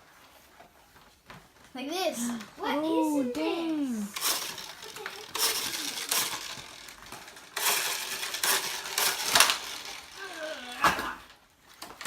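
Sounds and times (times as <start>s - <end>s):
plastic packaging rustling: 2.4s - 12.0s.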